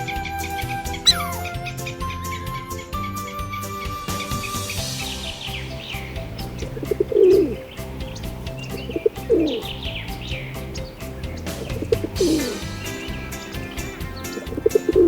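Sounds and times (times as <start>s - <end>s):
background music: 0.0s - 15.0s
bird chirps: 0.2s - 15.0s
dove cooing: 6.0s - 15.0s.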